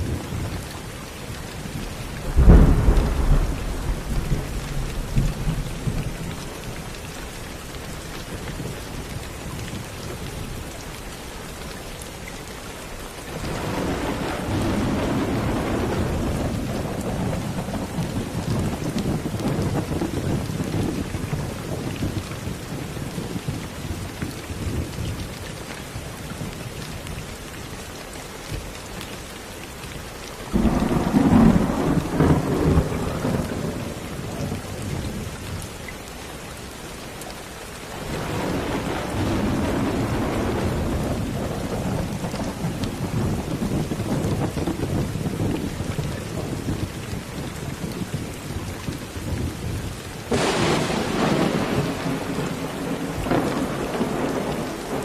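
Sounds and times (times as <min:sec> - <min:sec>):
steady rain falling: 0:00.0 - 0:55.0
thunder rumbling: 0:01.6 - 0:06.9, 0:13.3 - 0:25.3, 0:30.5 - 0:35.7, 0:37.9 - 0:55.0.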